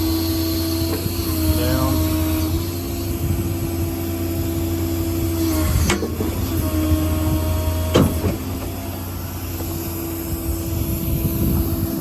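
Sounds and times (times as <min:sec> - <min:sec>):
diesel engine hum: 0:00.0 - 0:12.0
sharp clunk: 0:07.9 - 0:08.8.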